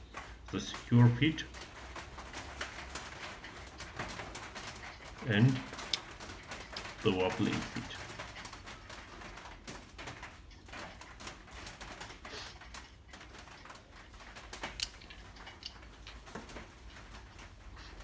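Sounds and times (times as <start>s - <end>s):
steel tools clicking and tapping: 0.1s - 9.4s, 13.4s - 18.0s.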